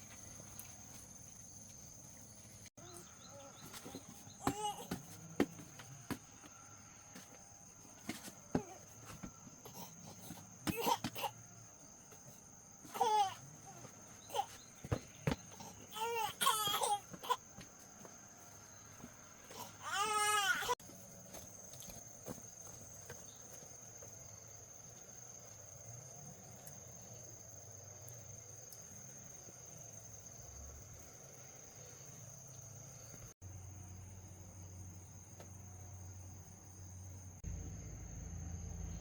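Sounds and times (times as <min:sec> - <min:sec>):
insects chirring: 0:00.0 - 0:39.0
baby crying: 0:12.9 - 0:13.4, 0:15.6 - 0:17.4, 0:19.5 - 0:20.8.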